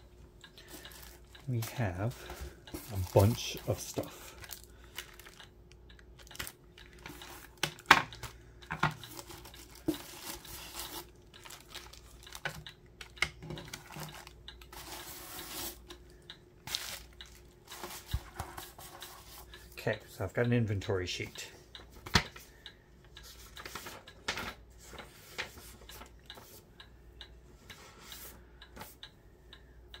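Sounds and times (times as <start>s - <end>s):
packaging rustling and crinkling: 2.8s - 5.4s, 9.1s - 12.6s, 16.7s - 18.7s.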